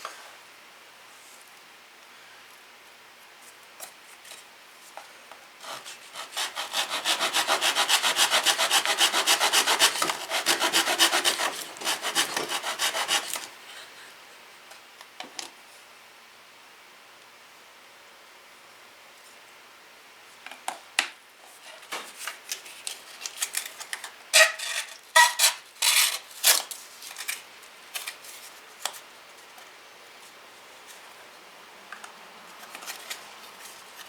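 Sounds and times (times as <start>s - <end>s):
hand tool rasping strokes: 5.6s - 13.5s.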